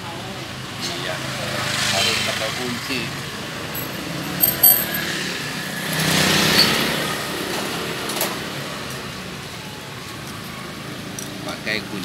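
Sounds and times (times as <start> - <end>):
metal hardware clinking: 3.7 - 5.1.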